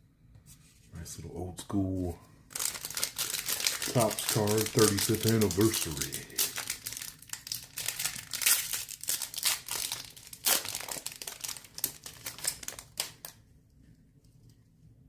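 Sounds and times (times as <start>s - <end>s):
wrapper crinkling and crackling: 2.5s - 13.4s.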